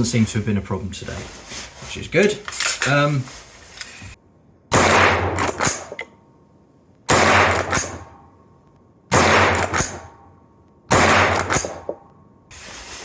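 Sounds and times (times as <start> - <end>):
rifle shots: 4.7 - 6.0, 7.1 - 8.2, 9.1 - 10.2, 10.9 - 12.0.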